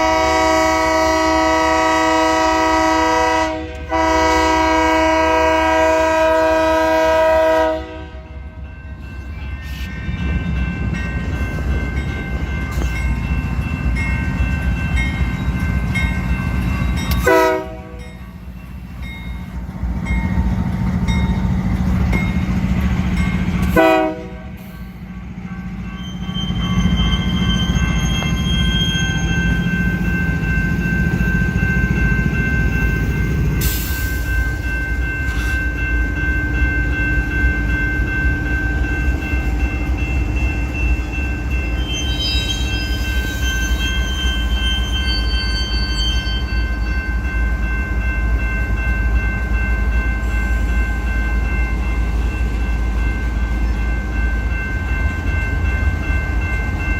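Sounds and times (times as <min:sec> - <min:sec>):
train air horn: 0:00.0 - 0:08.4, 0:17.2 - 0:18.0, 0:23.7 - 0:24.8
freight train rumbling: 0:00.0 - 0:56.9.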